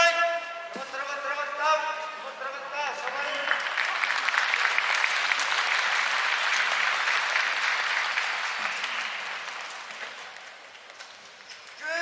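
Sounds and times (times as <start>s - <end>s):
crowd applauding: 3.0s - 10.7s.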